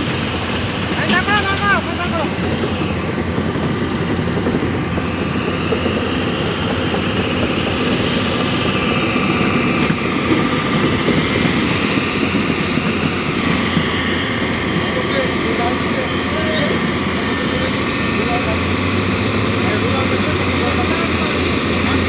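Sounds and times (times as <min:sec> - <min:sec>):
heavy diesel engine running: 0:00.0 - 0:22.0
high whine rising in pitch: 0:00.0 - 0:22.0.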